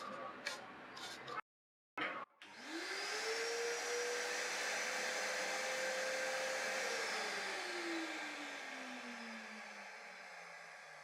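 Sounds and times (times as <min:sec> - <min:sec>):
vacuum cleaner motor whine: 0:02.4 - 0:11.0.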